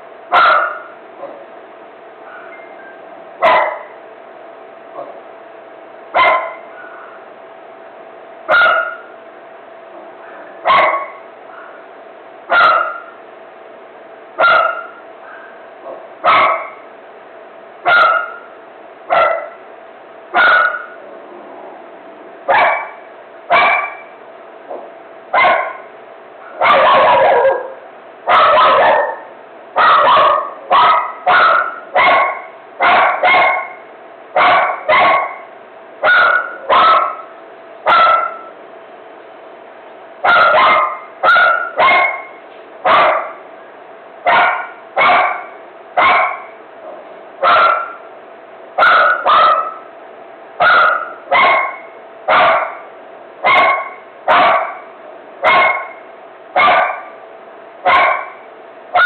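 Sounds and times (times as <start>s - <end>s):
dog barking: 0.3s - 1.5s, 2.3s - 4.0s, 4.9s - 5.3s, 6.2s - 7.2s, 8.5s - 9.1s, 10.2s - 11.9s, 12.5s - 13.2s, 14.4s - 16.8s, 17.8s - 18.5s, 19.1s - 19.6s, 20.4s - 21.0s, 22.5s - 37.3s, 37.9s - 38.5s, 40.2s - 43.4s, 44.2s - 48.1s, 48.8s - 49.9s, 50.6s - 57.2s, 57.8s - 59.0s.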